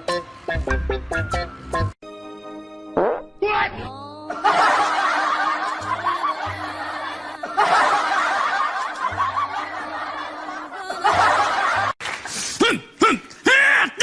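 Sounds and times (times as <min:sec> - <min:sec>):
group of people laughing: 0:04.3 - 0:12.0.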